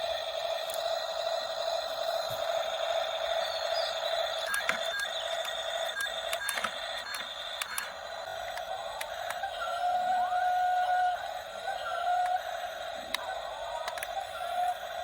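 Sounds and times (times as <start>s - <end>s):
small electric motors whining: 0.0s - 15.0s
sharp clicks: 4.3s - 9.4s.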